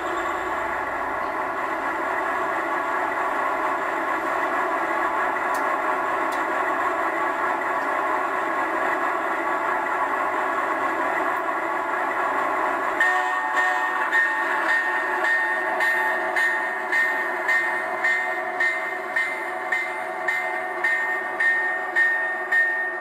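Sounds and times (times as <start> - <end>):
diesel engine sound from small speaker: 0.0 - 1.9.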